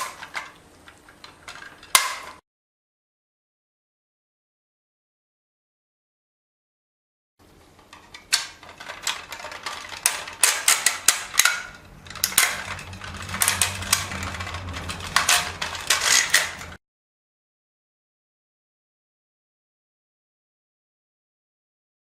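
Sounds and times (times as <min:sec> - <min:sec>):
sharp clicks and knocks: 0:07.8 - 0:16.8
low hum: 0:11.7 - 0:16.8.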